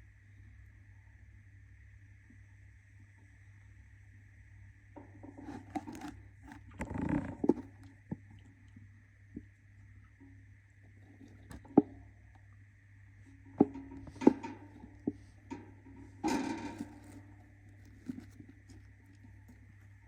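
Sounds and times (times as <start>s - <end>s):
steady low hum: 0.0s - 20.0s
scratchy rustle: 16.6s - 20.0s.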